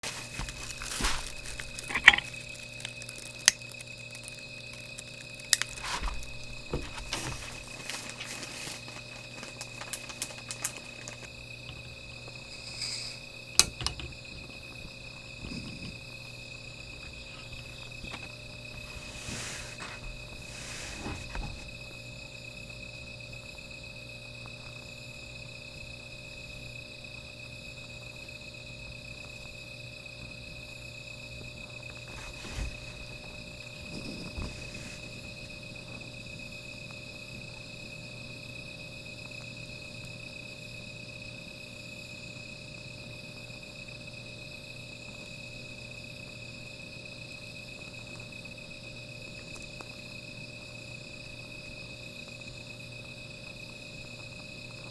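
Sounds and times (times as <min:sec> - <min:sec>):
fire crackling and popping: 0:00.0 - 0:20.8
crickets trilling: 0:00.0 - 0:54.9.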